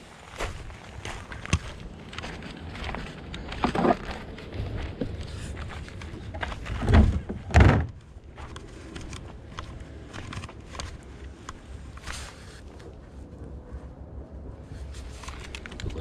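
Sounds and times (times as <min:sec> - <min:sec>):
light clicks and handling noises: 0:14.8 - 0:16.0.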